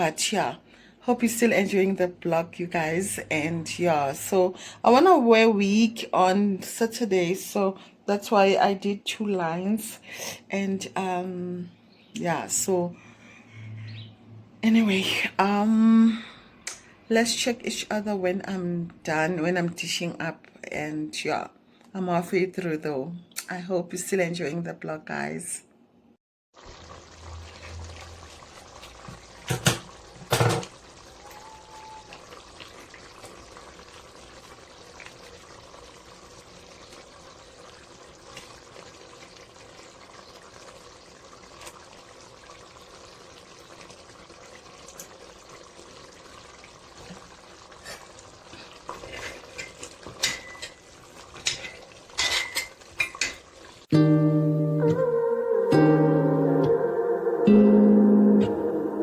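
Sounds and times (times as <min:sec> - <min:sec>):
kitchen clatters: 0:29.4 - 0:30.8, 0:48.9 - 0:53.5.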